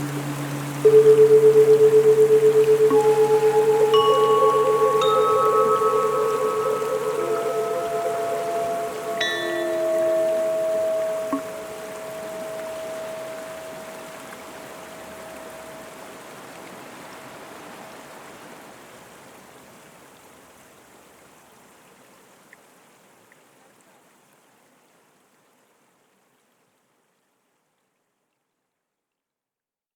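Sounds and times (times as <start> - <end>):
bell ringing tone: 0.0 - 15.9
running water rushing: 0.0 - 16.4.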